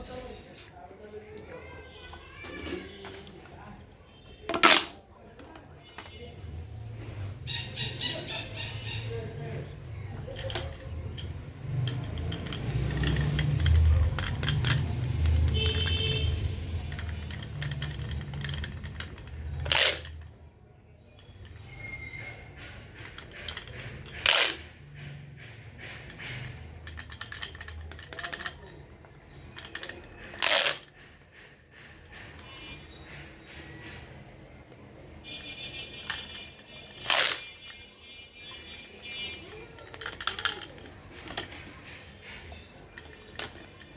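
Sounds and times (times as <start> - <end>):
plastic tubes crackling: 1.4 - 6.3, 10.0 - 20.4, 21.2 - 24.8, 25.5 - 31.1, 35.5 - 37.9, 39.0 - 43.9.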